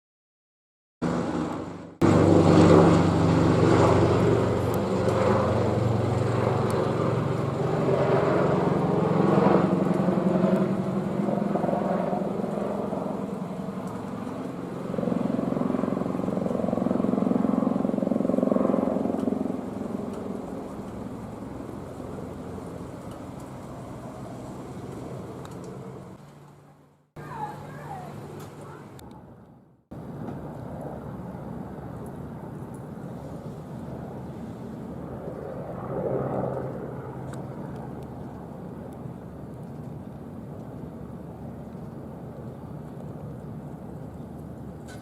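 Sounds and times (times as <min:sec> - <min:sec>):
helicopter flying past: 0:01.0 - 0:29.0, 0:29.9 - 0:45.0.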